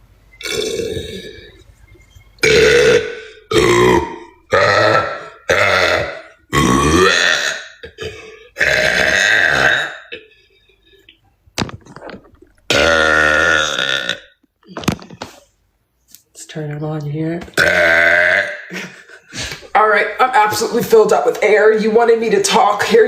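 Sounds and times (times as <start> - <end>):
woman burping loudly: 0.4 - 1.6, 2.4 - 10.3, 11.7 - 14.9, 17.6 - 19.1.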